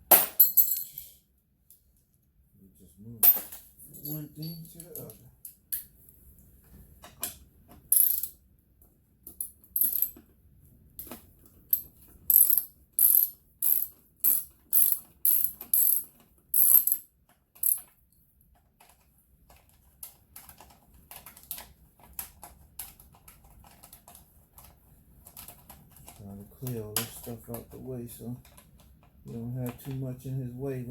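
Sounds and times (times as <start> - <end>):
ratchet wrench clicking: 7.9 - 8.3, 12.3 - 17.0.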